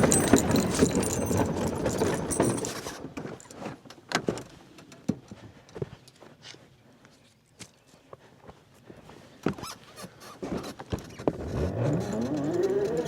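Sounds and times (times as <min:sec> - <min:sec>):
knocks and clicks: 0:00.0 - 0:02.7
dense clattering and rattling: 0:00.0 - 0:03.0.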